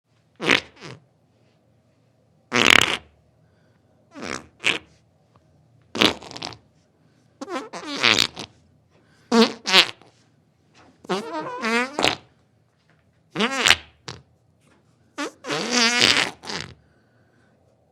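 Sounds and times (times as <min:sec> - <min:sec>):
farts: 0:00.4 - 0:01.1, 0:02.5 - 0:03.1, 0:04.1 - 0:04.9, 0:05.9 - 0:06.6, 0:07.4 - 0:08.6, 0:09.3 - 0:10.1, 0:10.8 - 0:12.3, 0:13.3 - 0:14.3, 0:15.2 - 0:16.8.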